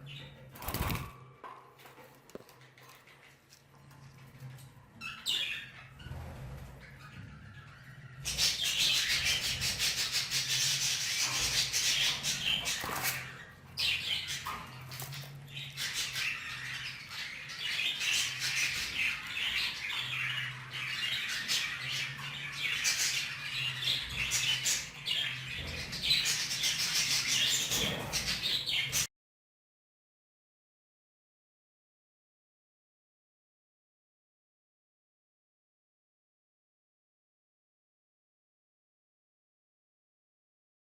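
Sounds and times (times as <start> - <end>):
budgerigars chirping and chattering: 5.0 - 29.1.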